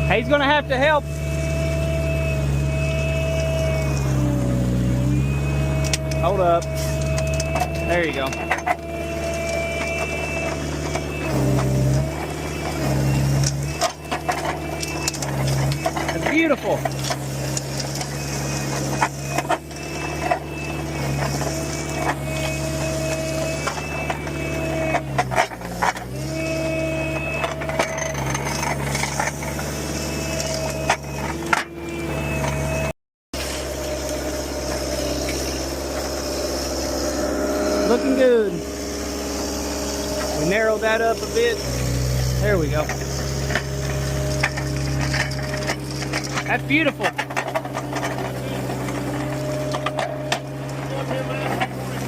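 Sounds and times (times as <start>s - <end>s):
diesel construction machinery running: 0.0s - 52.0s
knocks and clatters: 5.8s - 12.8s, 13.4s - 26.2s, 42.8s - 52.0s.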